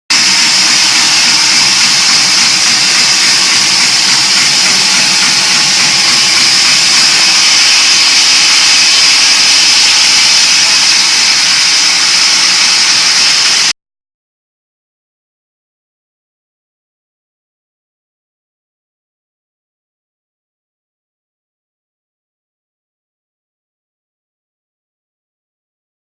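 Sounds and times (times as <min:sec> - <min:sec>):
band saw running: 0:00.1 - 0:13.7.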